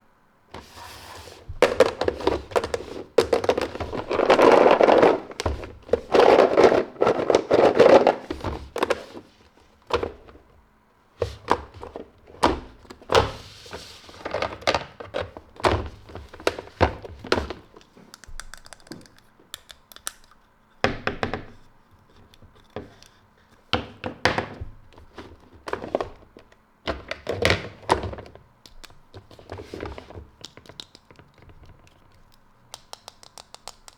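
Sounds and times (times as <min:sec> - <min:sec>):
handling plastic toys and packaging: 0:00.5 - 0:10.6, 0:11.2 - 0:19.2, 0:23.8 - 0:32.4.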